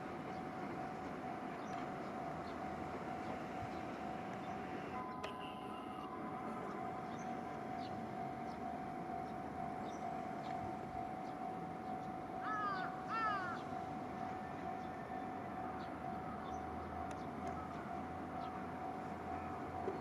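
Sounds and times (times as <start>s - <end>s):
faint steady tone: 0.0s - 20.0s
outdoor background noise: 0.0s - 20.0s
crow cawing: 12.4s - 13.6s.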